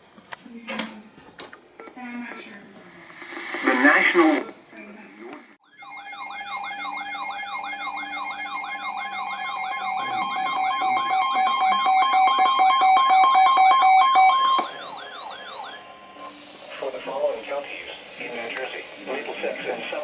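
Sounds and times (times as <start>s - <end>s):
steady beeping tones: 5.4s - 19.0s
wailing alert siren: 5.6s - 16.6s.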